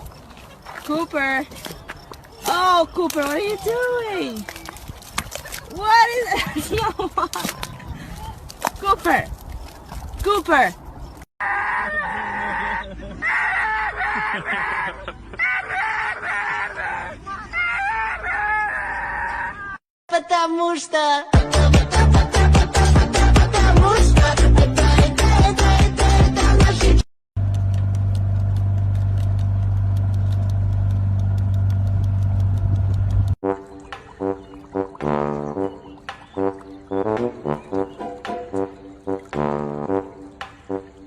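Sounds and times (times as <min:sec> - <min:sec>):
loud animal calls: 0:11.4 - 0:19.8
music: 0:21.2 - 0:27.0, 0:33.4 - 0:41.0
faint regular ticking: 0:27.4 - 0:33.4
low mechanical hum: 0:27.4 - 0:33.4.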